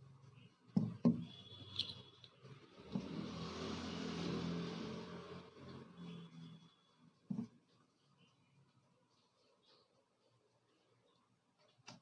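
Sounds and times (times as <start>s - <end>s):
road vehicle passing: 2.4s - 6.6s.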